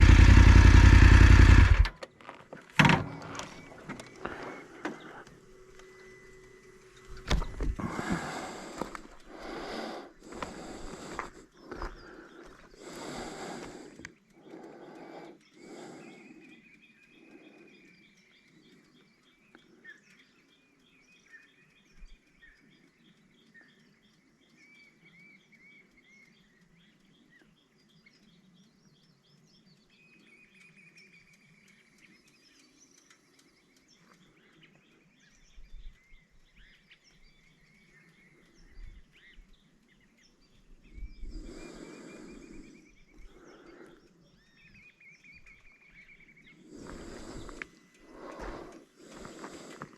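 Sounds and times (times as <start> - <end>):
fast series of chirps: 8.0 - 49.9
birds whistled calls: 15.0 - 49.9.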